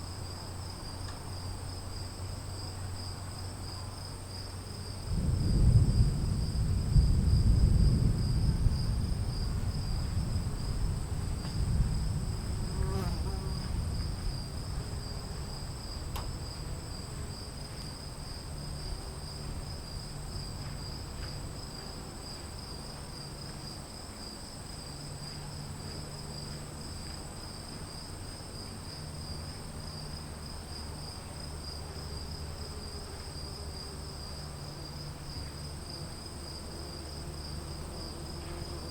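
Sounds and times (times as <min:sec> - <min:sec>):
crickets chirring: 0:00.0 - 0:38.9
thunder rumbling: 0:05.0 - 0:17.1.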